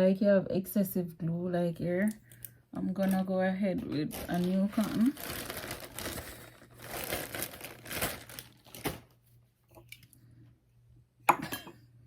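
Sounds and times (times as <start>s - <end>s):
crinkling and rustling packaging: 2.8s - 10.1s.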